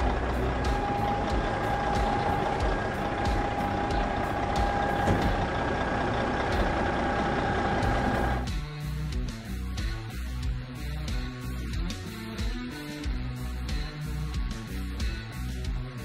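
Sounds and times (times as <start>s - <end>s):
high steady whine: 0.0s - 8.5s
truck engine hum: 0.0s - 9.8s.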